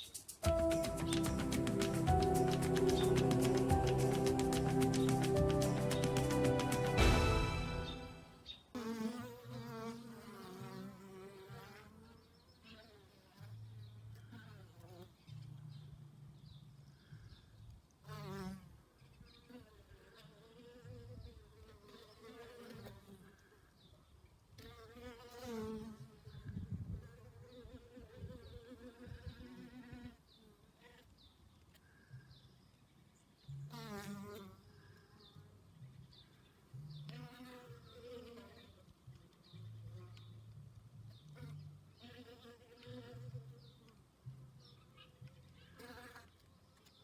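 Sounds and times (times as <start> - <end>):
bees buzzing: 0.4 - 9.1.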